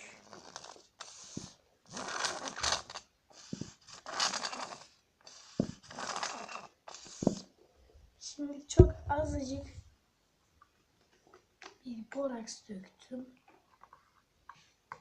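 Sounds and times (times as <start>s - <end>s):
slime scraped in a bowl: 0.0s - 7.5s.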